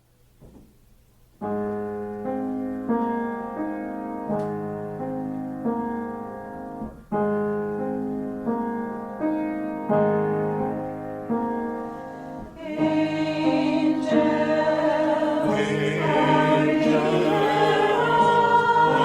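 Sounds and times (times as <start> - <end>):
piano playing slow chords: 1.4 - 19.0
choir singing: 12.5 - 19.0.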